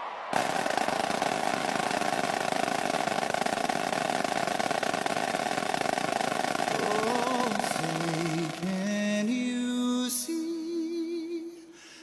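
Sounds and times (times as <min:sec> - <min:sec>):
large crowd cheering: 0:00.0 - 0:08.9.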